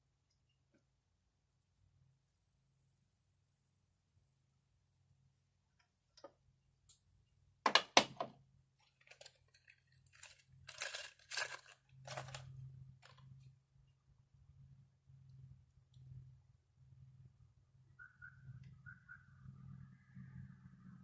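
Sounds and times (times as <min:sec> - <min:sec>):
rustling scraping handling noises: 0:08.8 - 0:13.4.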